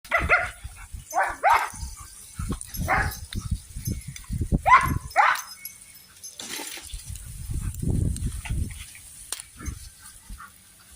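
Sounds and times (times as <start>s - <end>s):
dog barking: 0.1s - 1.8s, 2.8s - 3.2s, 4.6s - 5.5s.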